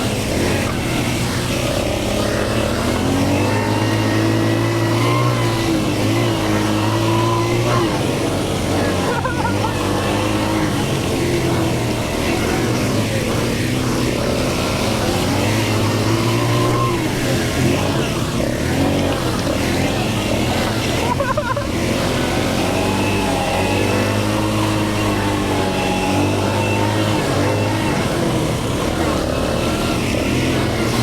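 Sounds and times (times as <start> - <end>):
atv engine revving: 0.0 - 31.0.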